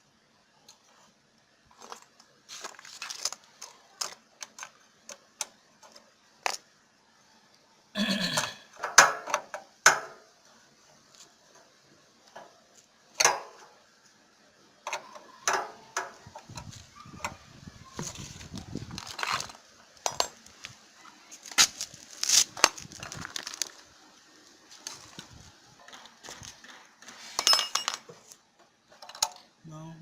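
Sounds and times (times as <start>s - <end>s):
metallic clinks and knocks of tools: 27.4s - 28.1s.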